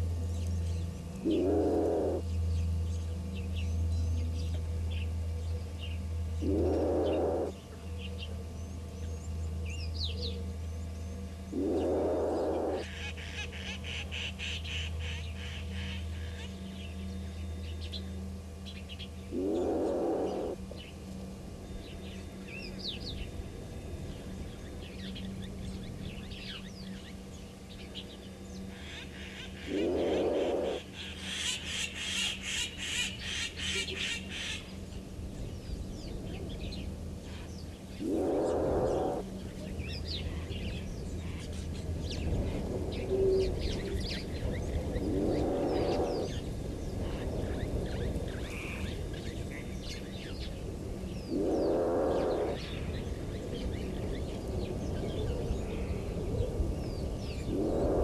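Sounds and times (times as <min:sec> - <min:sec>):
birds chirping: 0:00.0 - 0:58.0
low steady hum: 0:00.0 - 0:58.0
animal call: 0:01.2 - 0:02.2, 0:06.4 - 0:07.6, 0:11.5 - 0:16.0, 0:19.3 - 0:20.6, 0:28.8 - 0:34.6, 0:38.0 - 0:39.3, 0:45.0 - 0:46.4, 0:51.3 - 0:52.8.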